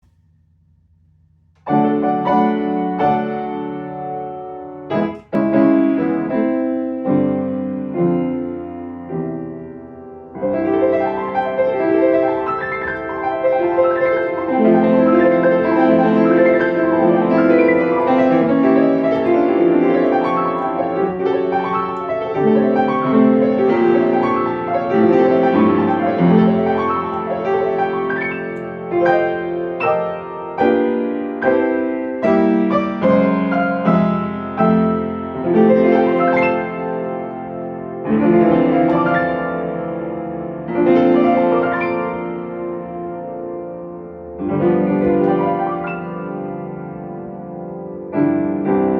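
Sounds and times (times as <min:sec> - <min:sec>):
solo piano playing: 0:00.0 - 0:48.9.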